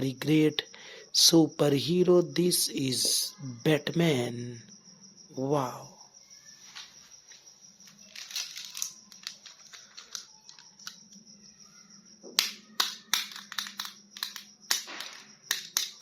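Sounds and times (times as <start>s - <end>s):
plastic packaging crinkling: 7.9s - 11.0s
toy figures clicking: 7.9s - 11.3s, 12.3s - 16.0s.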